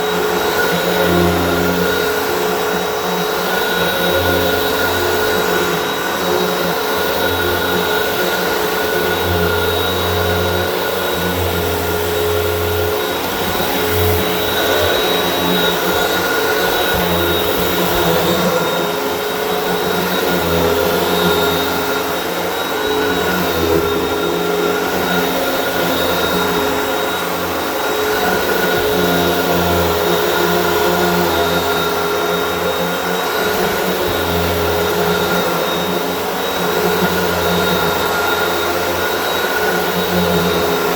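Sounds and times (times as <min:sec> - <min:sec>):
vacuum cleaner running on carpet: 0:00.0 - 0:40.9.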